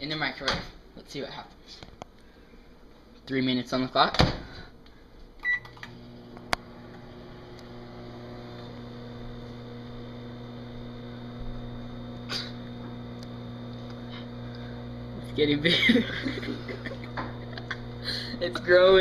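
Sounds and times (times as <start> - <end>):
microwave beep: 5.4 - 6.0
microwave humming: 5.4 - 19.0.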